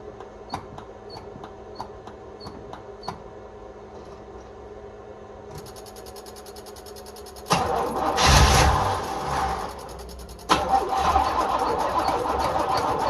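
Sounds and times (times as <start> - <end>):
fast quiet ticking: 9.7 - 10.5.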